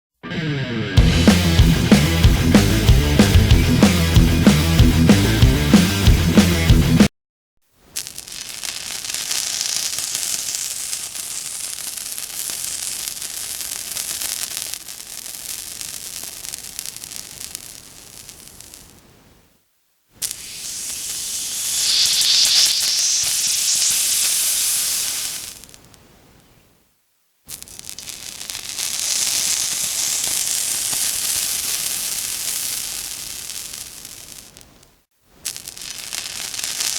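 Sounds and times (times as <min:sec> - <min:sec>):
water sizzling: 0:20.2 - 0:25.9, 0:27.5 - 0:34.6, 0:35.4 - 0:36.9.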